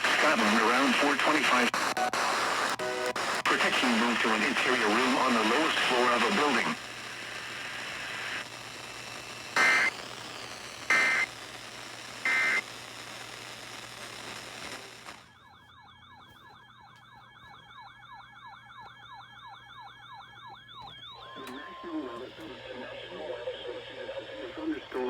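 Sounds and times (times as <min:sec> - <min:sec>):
radio hiss: 0:00.0 - 0:15.3, 0:21.1 - 0:25.0
electronic siren yelping: 0:09.6 - 0:10.0, 0:10.9 - 0:11.3, 0:12.3 - 0:12.6, 0:15.2 - 0:24.3
short data bursts: 0:09.6 - 0:11.4, 0:12.2 - 0:12.7.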